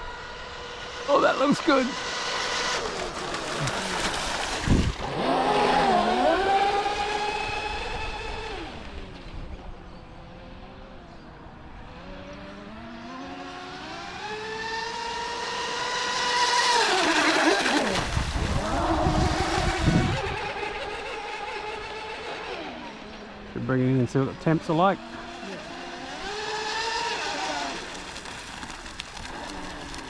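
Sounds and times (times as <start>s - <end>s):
rc boat electric motors whining: 0.0s - 30.0s.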